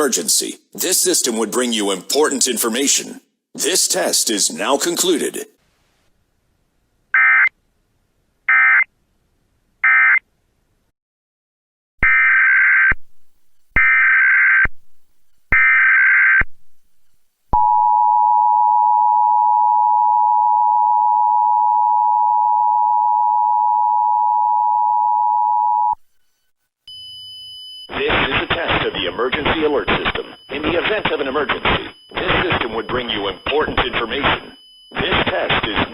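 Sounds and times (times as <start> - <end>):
harsh buzzing data bursts: 26.2 - 35.9
two-tone attention signal: 29.4 - 35.9.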